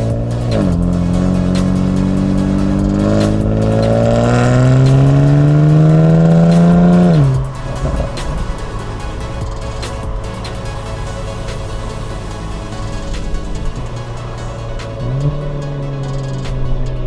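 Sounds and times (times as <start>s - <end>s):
car engine accelerating: 0.0s - 17.0s.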